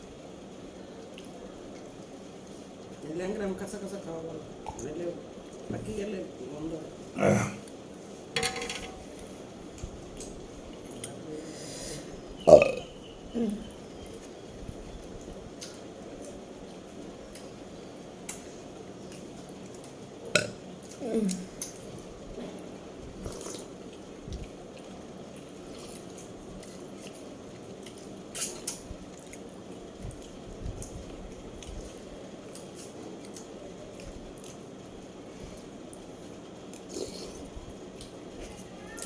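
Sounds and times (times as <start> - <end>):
steady low hiss: 0.0 - 39.0
dishes and utensils clinking: 8.4 - 9.3.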